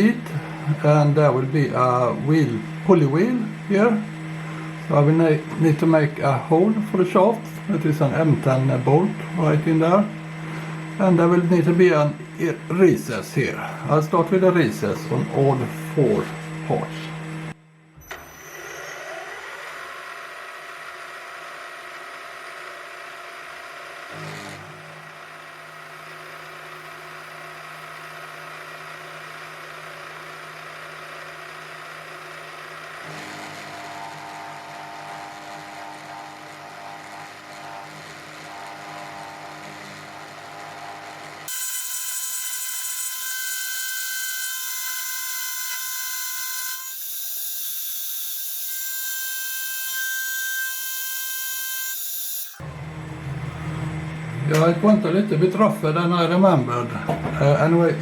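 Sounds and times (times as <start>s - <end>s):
thin high whine: 0.0s - 20.1s, 32.0s - 58.0s
milling machine cutting metal: 0.0s - 54.8s
motor hum: 0.0s - 58.0s.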